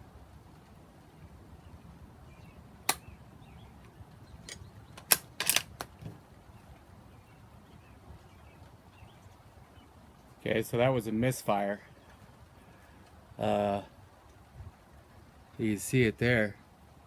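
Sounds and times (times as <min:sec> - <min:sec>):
rifle action metallic clacks: 0:04.4 - 0:06.0
rifle firing pin click: 0:04.5 - 0:05.9.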